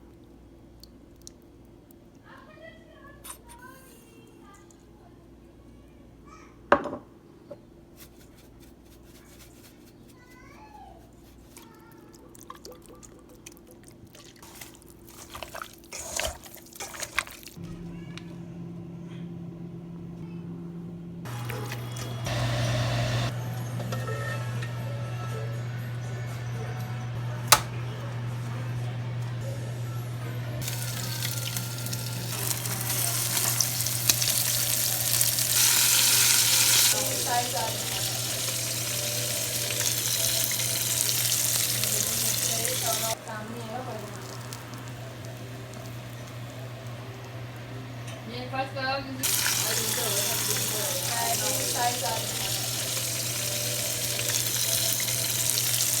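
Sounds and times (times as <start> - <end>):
wet clicks and drips: 0.7 - 2.2
food handling noises: 14.0 - 18.2
steady low hum: 18.2 - 35.5
chicken frying in hot oil: 30.6 - 47.3, 49.2 - 56.0.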